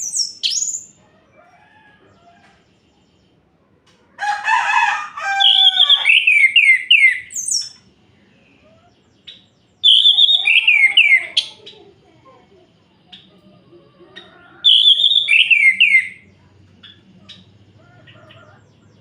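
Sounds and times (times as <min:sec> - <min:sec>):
thrush singing whistled notes: 0:00.0 - 0:00.9, 0:05.4 - 0:07.8, 0:09.8 - 0:11.5, 0:14.6 - 0:16.2.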